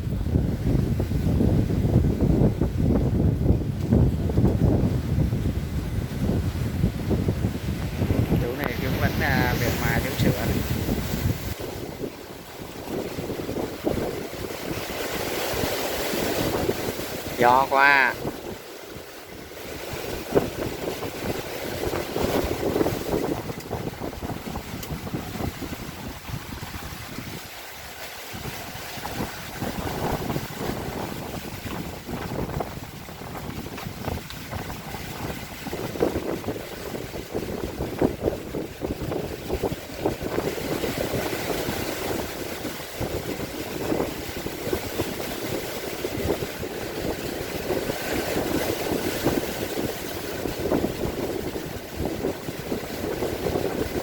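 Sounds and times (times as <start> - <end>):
wind buffeting microphone: 0.0 - 54.0.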